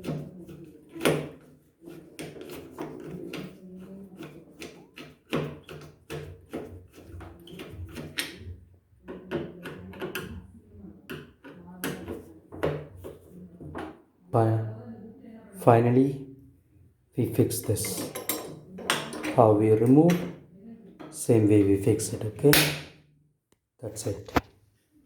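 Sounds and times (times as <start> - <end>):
metal door handle clicks and knocks: 17.7 - 20.4.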